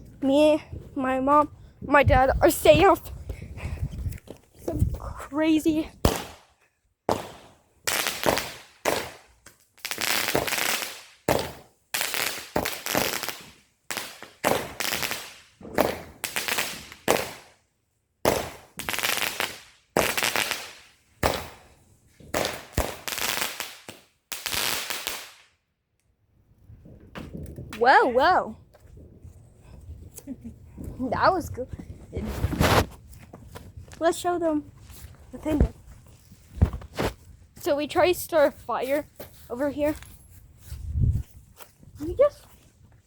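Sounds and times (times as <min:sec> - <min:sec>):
fireworks bangs: 0:07.1 - 0:17.5, 0:18.2 - 0:25.4.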